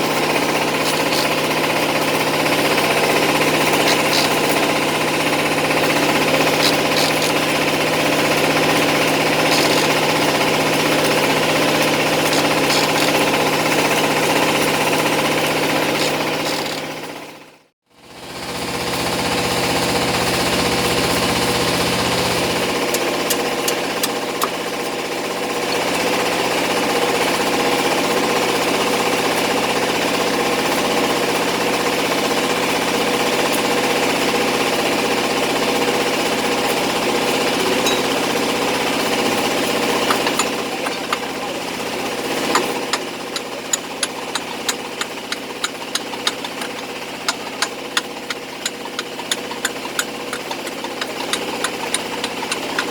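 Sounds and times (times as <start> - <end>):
sharp ticks: 3.7 - 4.7, 5.8 - 7.5, 9.0 - 10.2, 11.8 - 13.3, 42.4 - 52.9
diesel engine idling: 34.4 - 52.9.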